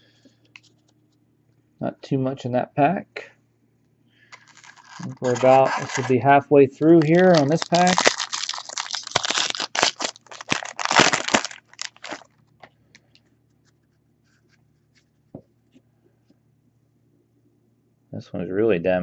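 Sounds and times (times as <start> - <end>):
foil wrapper crinkling and tearing: 4.3 - 13.2.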